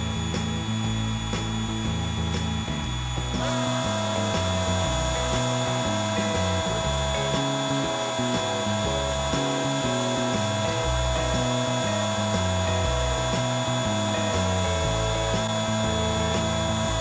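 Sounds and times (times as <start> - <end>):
background music with bass line: 0.0 - 17.0
power sander whining: 0.0 - 17.0.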